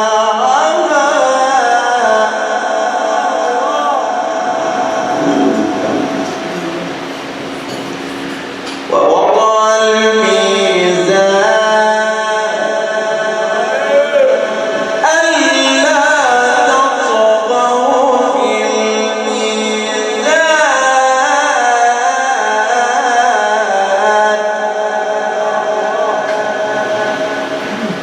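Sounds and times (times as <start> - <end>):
man reciting melodically: 0.0 - 7.0, 8.9 - 28.0.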